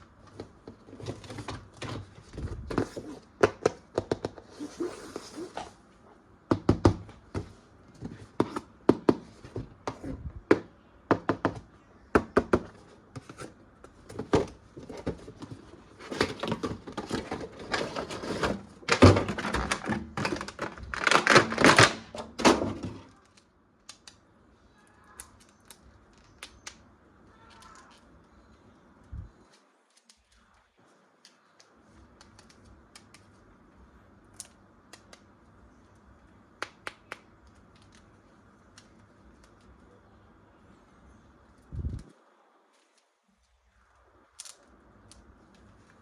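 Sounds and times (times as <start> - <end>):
packaging rustling and scraping: 0.2 - 3.3, 4.4 - 5.8, 13.2 - 23.4
plastic toys clicking and knocking: 18.9 - 24.2, 25.1 - 28.3.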